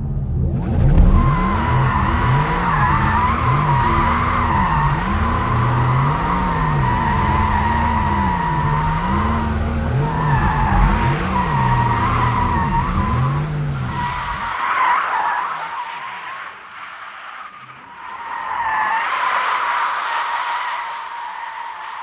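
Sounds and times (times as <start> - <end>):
low hum rising and falling: 0.0 - 14.5
tyres squealing: 1.2 - 16.4.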